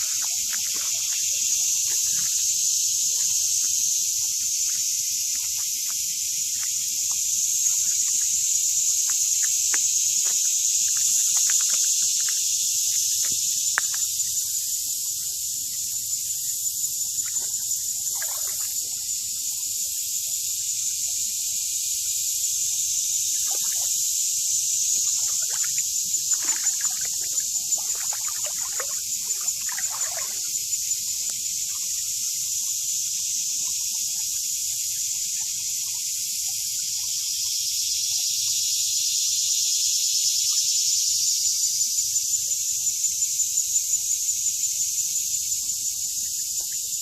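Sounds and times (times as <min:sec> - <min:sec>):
high-pitched insect chorus: 0:00.0 - 0:47.0.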